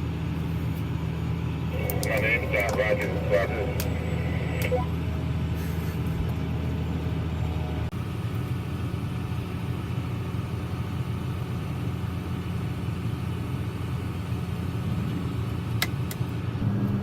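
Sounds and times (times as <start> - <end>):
tractor diesel engine droning: 0.0 - 17.0.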